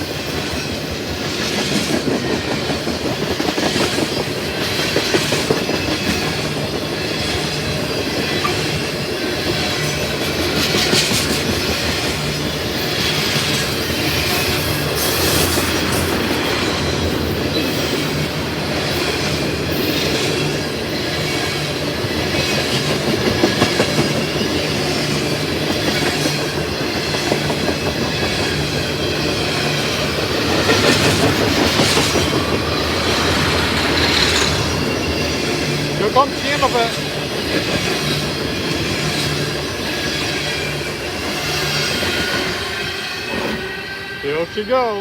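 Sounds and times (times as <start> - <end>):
train wheels rumbling on rail: 0.0 - 45.0
clatter over rail joints: 22.3 - 39.4.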